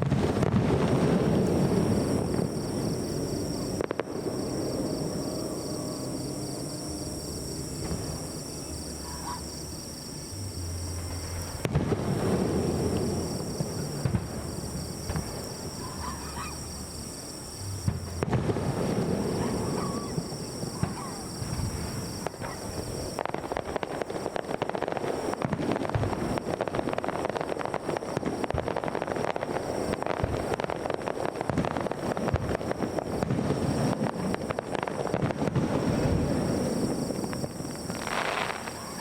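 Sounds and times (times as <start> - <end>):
fireworks shells bursting: 17.8 - 39.0.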